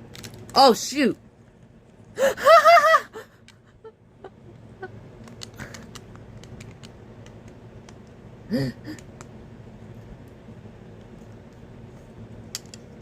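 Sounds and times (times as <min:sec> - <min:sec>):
plastic pieces clicking: 0:05.2 - 0:08.2, 0:12.5 - 0:13.0
wavering vocal groan: 0:08.5 - 0:09.0.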